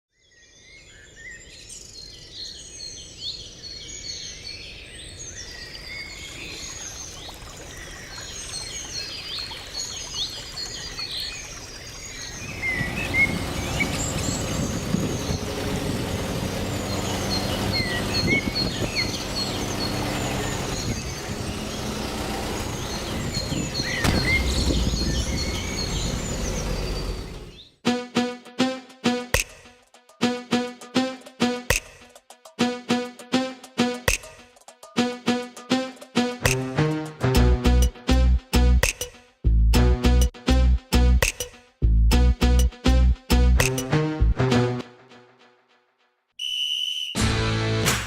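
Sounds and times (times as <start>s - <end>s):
small birds chirping: 0.2s - 27.8s
engine running low: 12.3s - 27.6s.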